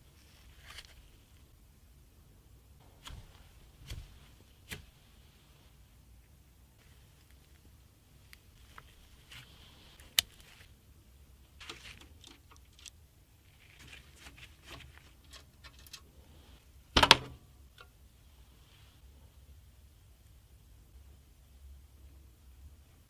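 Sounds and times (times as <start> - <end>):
fan handling clicks and rustles: 11.6 - 13.0, 13.8 - 16.2.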